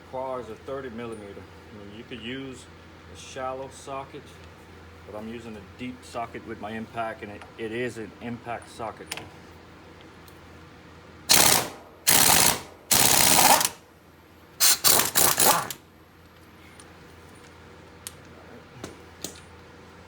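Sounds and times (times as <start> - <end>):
impact wrench rattling bursts: 11.3 - 13.8, 14.6 - 15.8.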